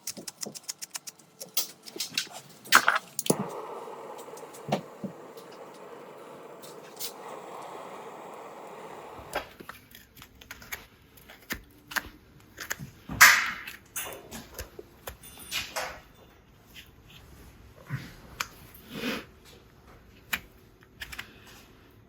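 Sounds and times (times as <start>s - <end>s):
tools clicking and knocking on hoof: 0.0s - 2.4s.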